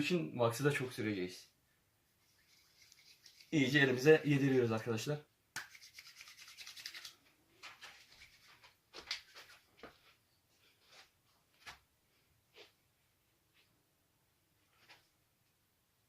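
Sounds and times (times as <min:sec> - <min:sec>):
hands rubbing hair wax: 0:02.2 - 0:03.8, 0:05.6 - 0:09.9.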